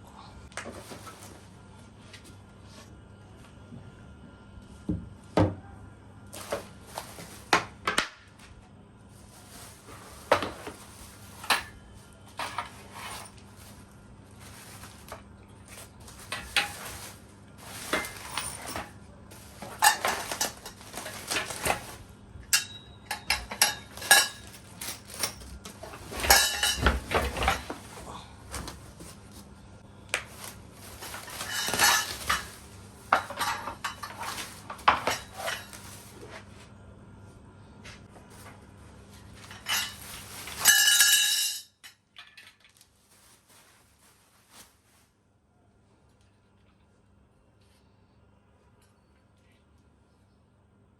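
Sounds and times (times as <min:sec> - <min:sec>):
faint steady hum: 0:00.0 - 0:50.9
metal objects clinking and clattering: 0:19.6 - 0:22.0, 0:22.6 - 0:27.9, 0:31.1 - 0:35.8, 0:39.4 - 0:42.8.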